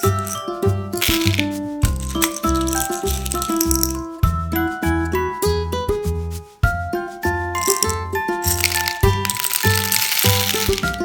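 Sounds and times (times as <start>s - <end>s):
bright plinking melody: 7.5s - 11.0s.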